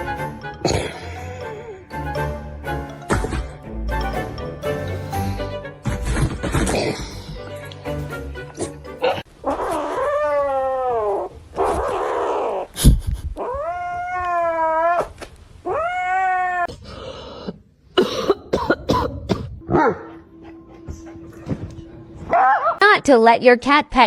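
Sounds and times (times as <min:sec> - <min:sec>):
cat yowling: 0:13.4 - 0:16.7.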